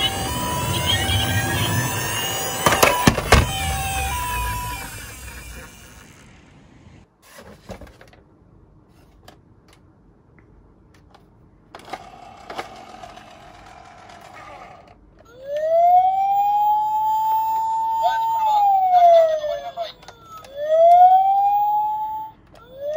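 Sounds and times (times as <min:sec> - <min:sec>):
toy siren wail: 0:00.0 - 0:06.4, 0:12.0 - 0:22.9
steady tone: 0:00.0 - 0:07.0.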